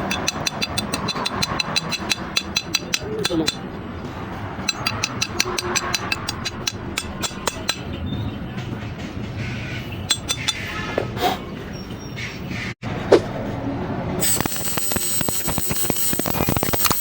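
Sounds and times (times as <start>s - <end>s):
sharp metallic taps: 0.0s - 3.7s, 4.6s - 7.9s, 10.1s - 10.7s
steady mechanical noise: 0.0s - 11.1s, 12.4s - 17.0s.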